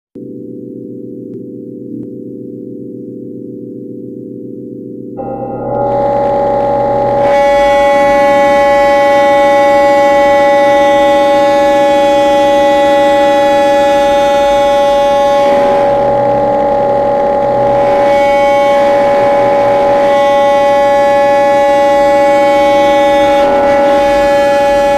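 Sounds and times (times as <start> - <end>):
synthesized electronic drone: 5.1 - 24.9.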